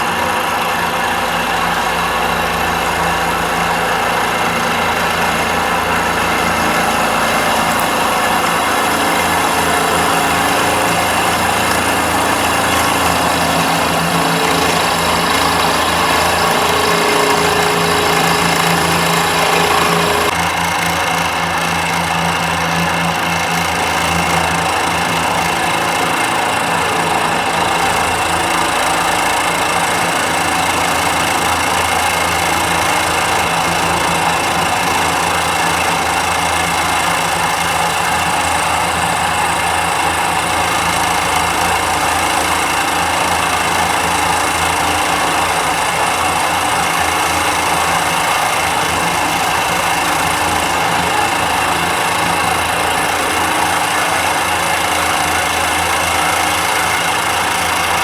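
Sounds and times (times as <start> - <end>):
electric motor humming: 4.4 - 20.4.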